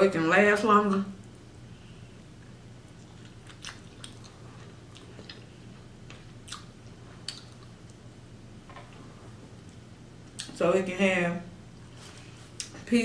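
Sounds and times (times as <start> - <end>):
low steady hum: 0.0 - 13.0
quiet chewing: 0.9 - 8.0.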